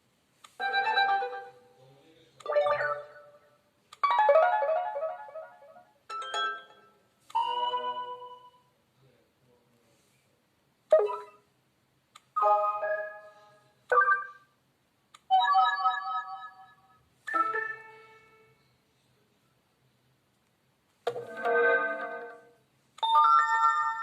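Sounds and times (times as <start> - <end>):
phone alert chimes: 11.0 - 11.4, 15.3 - 18.4.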